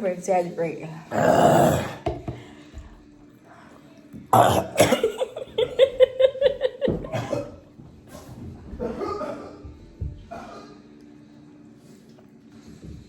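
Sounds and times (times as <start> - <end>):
person coughing hard: 4.3 - 5.4, 7.0 - 7.6, 8.8 - 9.7
person laughing: 4.9 - 7.4.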